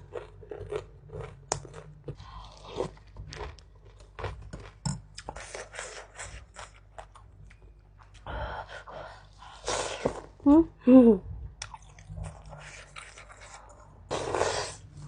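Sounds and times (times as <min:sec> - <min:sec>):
person chewing food: 0:00.0 - 0:08.3, 0:11.5 - 0:15.0.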